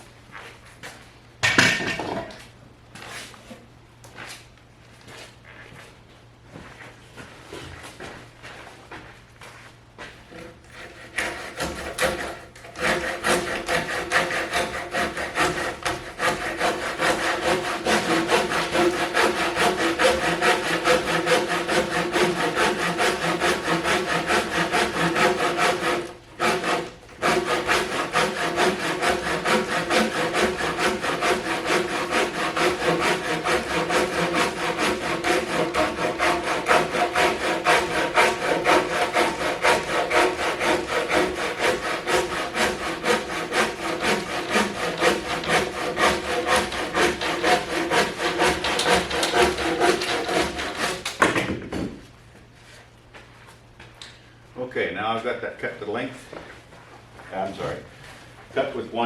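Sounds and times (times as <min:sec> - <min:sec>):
saw cutting wood: 0:10.3 - 0:51.2.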